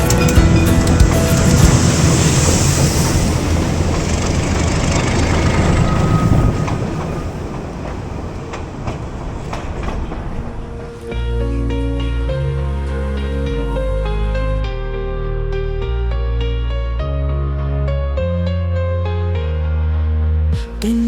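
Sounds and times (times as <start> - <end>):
wheels clicking over rail joints: 0.0 - 11.2
train cars rumbling: 0.0 - 14.6.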